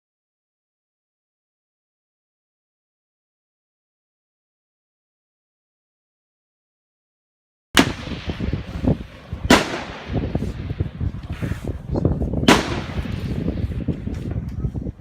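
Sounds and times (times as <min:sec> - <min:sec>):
rifle shots: 0:07.8 - 0:11.5, 0:12.4 - 0:14.1
low rumbling noise: 0:07.8 - 0:15.0.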